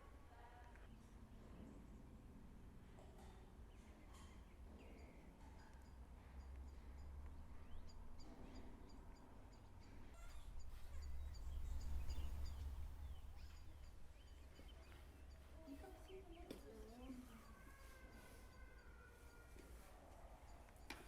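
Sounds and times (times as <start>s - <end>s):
small birds chirping: 0.3s - 21.0s
steady low rumble: 10.5s - 14.6s.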